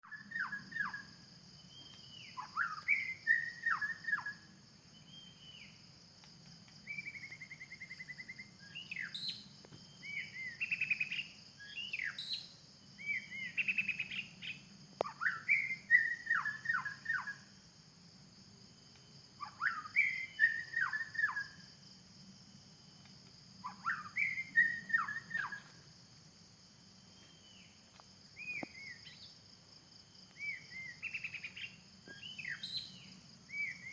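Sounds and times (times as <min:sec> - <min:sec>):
high insect drone: 0:00.0 - 0:33.9
bird singing whistles: 0:00.1 - 0:04.4, 0:06.8 - 0:17.4, 0:19.4 - 0:21.6, 0:23.6 - 0:25.6, 0:28.4 - 0:29.3, 0:30.4 - 0:33.9.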